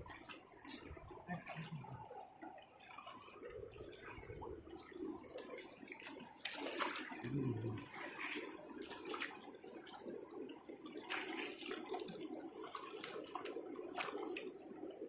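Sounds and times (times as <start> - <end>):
river water splashing: 0.0 - 15.0.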